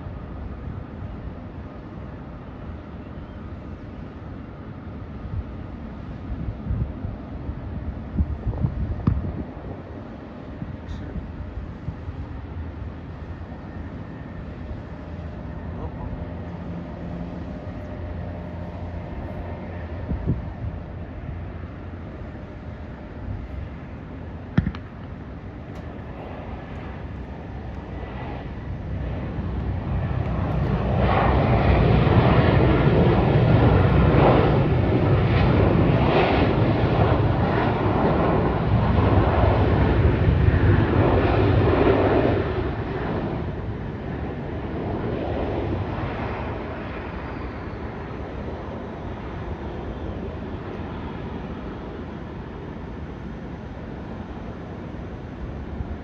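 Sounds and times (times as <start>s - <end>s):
sharp knock: 24.6s - 24.8s.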